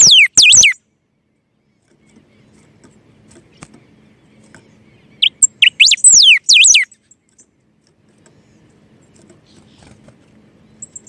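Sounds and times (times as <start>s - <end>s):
bird whistling song: 0.0s - 0.8s, 5.0s - 7.0s.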